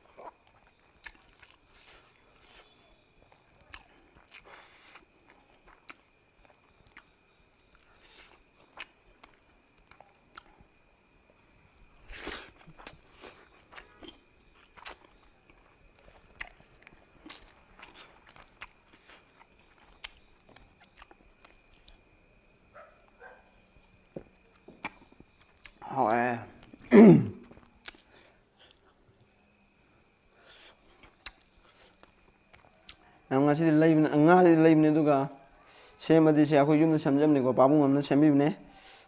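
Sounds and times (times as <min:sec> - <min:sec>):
person chewing and crunching food: 0:00.0 - 0:10.8, 0:12.0 - 0:22.0, 0:23.8 - 0:25.9, 0:26.6 - 0:33.2.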